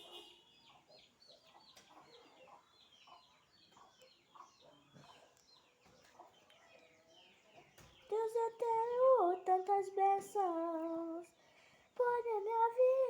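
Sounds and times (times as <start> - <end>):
faint chickens clucking: 0.0 - 13.0.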